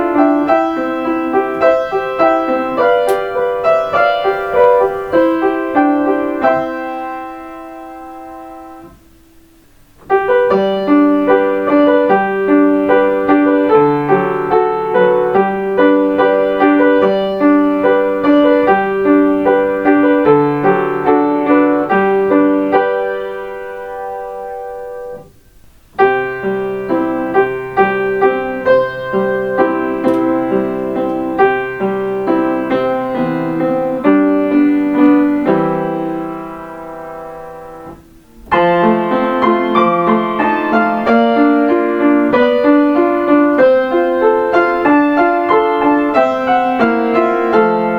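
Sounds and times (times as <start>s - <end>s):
piano playing chime melodies: 0.0s - 8.9s, 28.5s - 47.9s.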